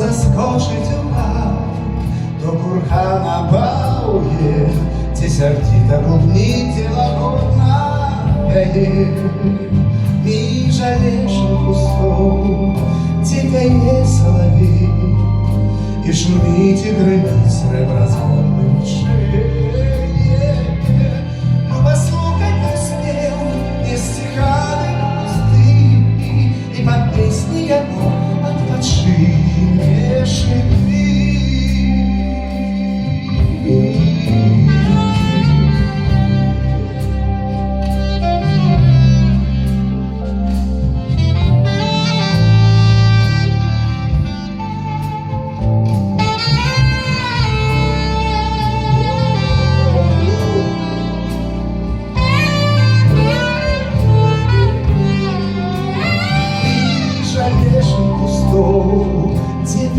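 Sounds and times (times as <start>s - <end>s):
bass notes: 0.0s - 59.9s
guitar chords: 0.0s - 59.9s
live folk-rock band playing: 0.0s - 59.9s.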